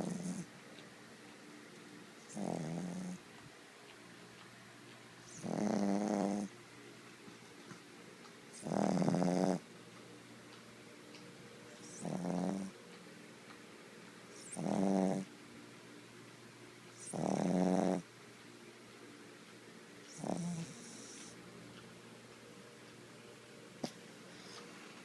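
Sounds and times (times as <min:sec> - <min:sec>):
pet snoring: 0:00.0 - 0:00.5, 0:02.2 - 0:03.3, 0:05.2 - 0:06.6, 0:08.5 - 0:09.7, 0:11.8 - 0:12.8, 0:14.4 - 0:15.3, 0:17.0 - 0:18.1, 0:20.1 - 0:21.4.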